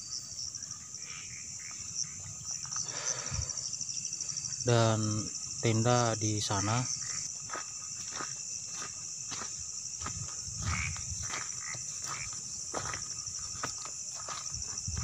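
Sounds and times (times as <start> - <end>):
crickets trilling: 0.0 - 15.0
footsteps on forest floor: 6.5 - 15.0.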